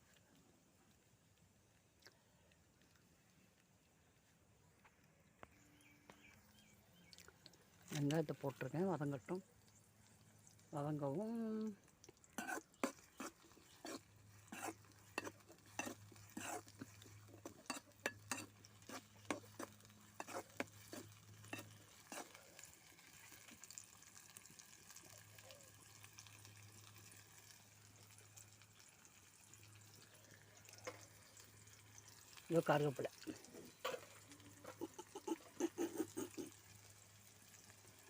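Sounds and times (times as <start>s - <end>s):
onions sizzling in oil: 10.7s - 38.0s
ladle scraping a pan: 12.4s - 22.7s.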